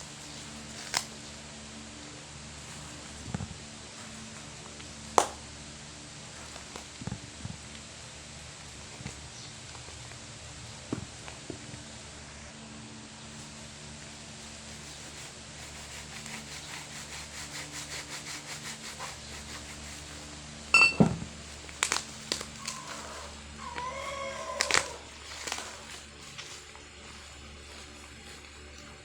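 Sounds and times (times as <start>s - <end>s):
packaging knocks and crinkles: 21.0s - 23.2s, 24.6s - 26.6s.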